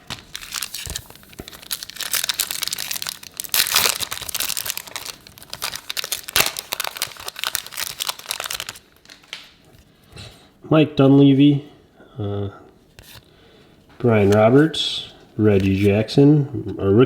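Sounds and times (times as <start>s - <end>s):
plastic wrapper tearing and crinkling: 0.0s - 9.6s.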